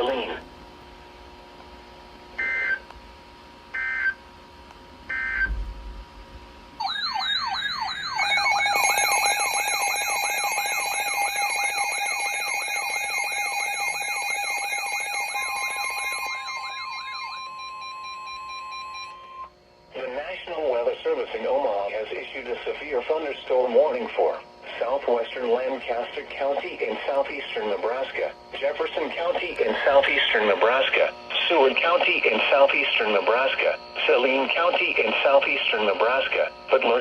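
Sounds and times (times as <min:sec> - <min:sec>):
steady warning alarm tone: 0:00.0 - 0:00.5, 0:02.4 - 0:02.9, 0:03.7 - 0:04.2, 0:05.1 - 0:05.6, 0:06.8 - 0:37.0
steady alert tones: 0:06.8 - 0:19.5
wavering siren-like alarm tone: 0:06.8 - 0:19.6.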